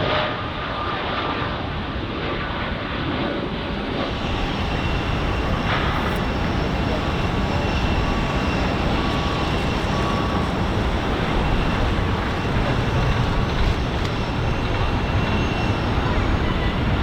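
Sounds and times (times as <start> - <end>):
jet engines rumbling: 3.4 - 17.0
faint high whining tones: 4.0 - 17.0.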